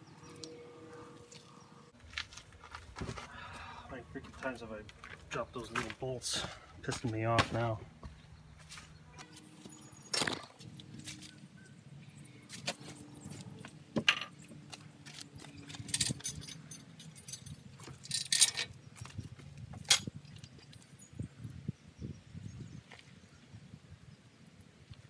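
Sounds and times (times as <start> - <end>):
metallic clinks of bolts and tools: 15.1 - 19.1.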